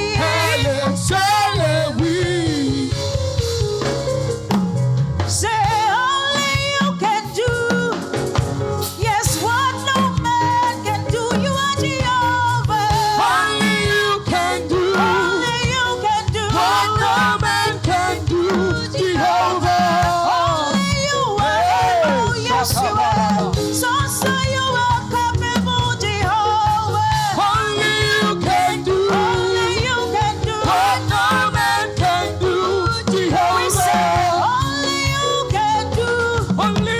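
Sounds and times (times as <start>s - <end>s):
church choir singing: 0.0s - 3.0s, 13.0s - 23.7s, 27.4s - 35.2s
lead vocal with vibrato: 0.0s - 4.0s, 5.2s - 36.9s
gospel band playing: 0.0s - 36.9s.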